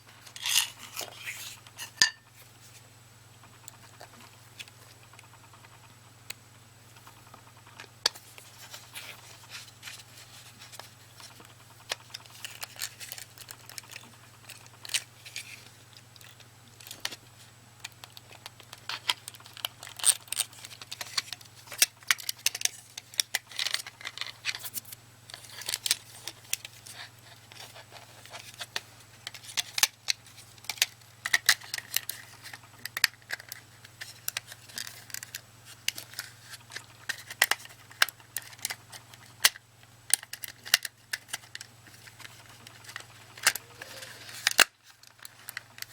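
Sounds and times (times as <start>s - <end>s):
low steady hum: 0.0s - 45.9s
plastic mouse parts clicking: 28.3s - 39.6s.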